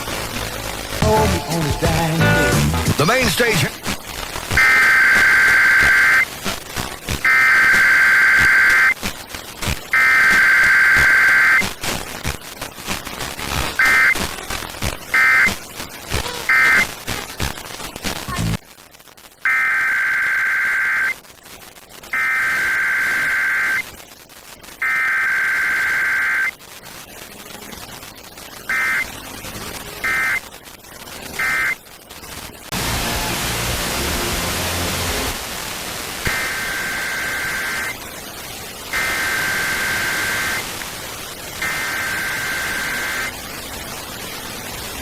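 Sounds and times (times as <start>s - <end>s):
digital data bursts: 0.0s - 18.6s, 24.8s - 26.6s, 28.3s - 33.8s, 36.0s - 40.8s, 41.5s - 43.9s
static hiss: 0.0s - 45.0s.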